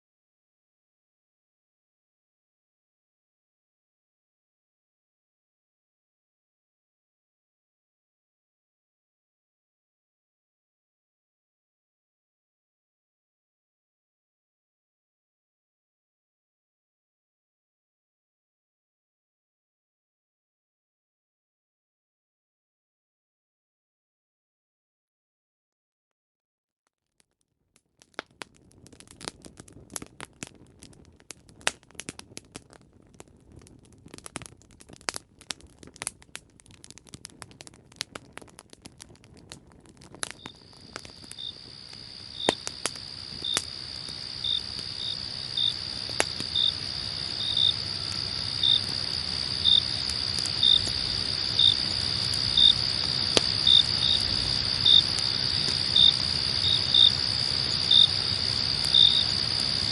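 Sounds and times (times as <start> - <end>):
campfire crackling and popping: 27.2 - 59.9
crickets chirping: 40.3 - 59.9.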